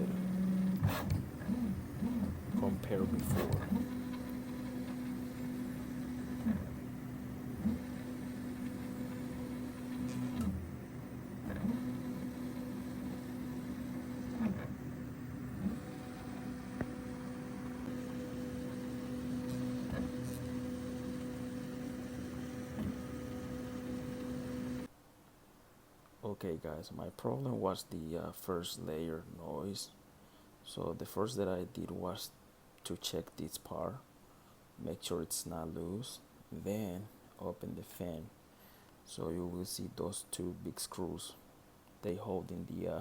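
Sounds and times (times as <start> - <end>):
printer motor hum with pitch glides: 0.0 - 24.9.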